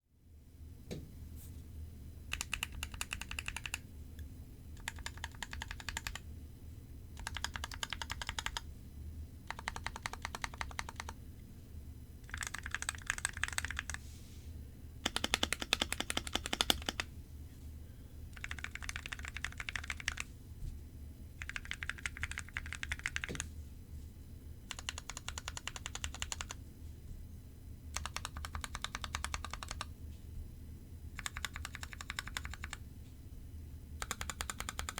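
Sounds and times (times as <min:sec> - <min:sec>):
mechanical keyboard typing: 0:02.3 - 0:03.8, 0:04.8 - 0:06.2, 0:07.2 - 0:08.6, 0:09.5 - 0:11.2, 0:12.2 - 0:14.0, 0:15.0 - 0:17.1, 0:18.4 - 0:20.3, 0:21.4 - 0:23.5, 0:24.7 - 0:26.6, 0:27.9 - 0:29.9, 0:31.2 - 0:32.8, 0:34.0 - 0:34.9.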